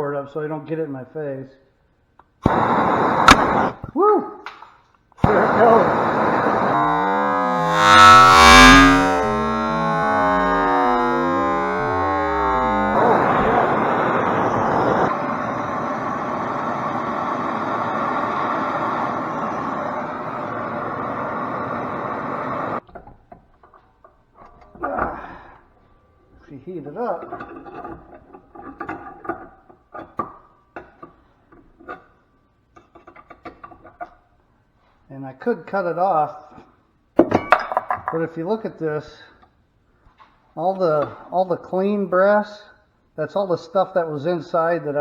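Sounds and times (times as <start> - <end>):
distorted electric guitar music: 2.5 - 3.8, 5.2 - 22.8
torch flame hissing: 2.5 - 3.8, 5.2 - 10.1, 12.9 - 22.8.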